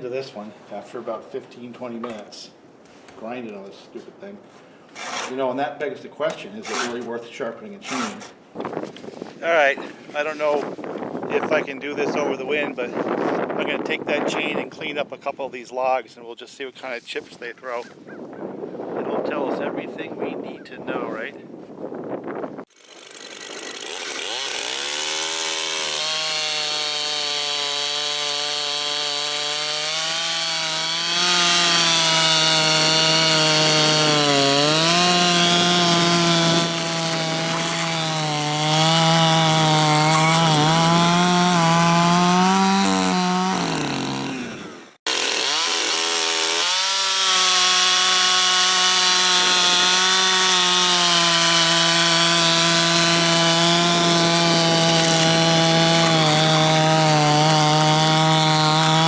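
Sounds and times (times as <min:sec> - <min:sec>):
chainsaw cutting through log: 0:05.0 - 0:05.4, 0:06.5 - 0:07.1, 0:07.8 - 0:08.4, 0:22.6 - 0:59.0.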